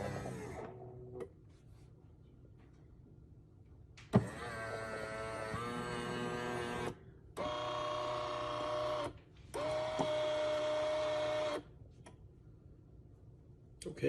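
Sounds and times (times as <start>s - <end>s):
coffee grinder motor whining: 0.0s - 0.8s, 4.2s - 11.6s.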